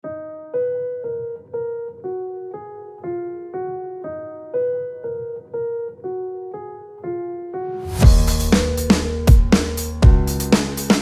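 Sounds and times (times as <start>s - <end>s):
keyboard melody: 0.1s - 11.0s.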